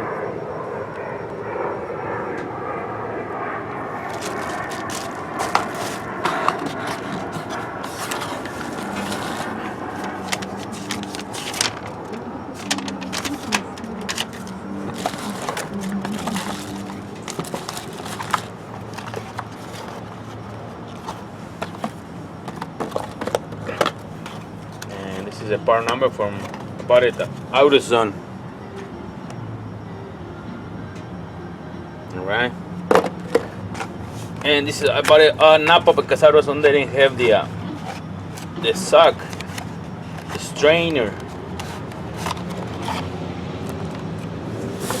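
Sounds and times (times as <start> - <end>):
droning hum: 0.0 - 45.0
parts and packaging being handled: 3.9 - 27.5, 32.9 - 45.0.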